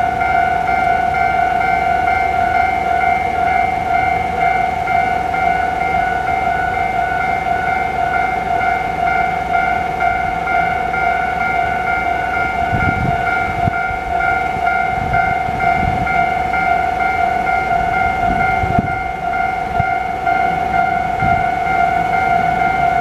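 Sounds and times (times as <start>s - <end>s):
level crossing warning bells: 0.0s - 23.0s
train rumbling past: 0.0s - 23.0s.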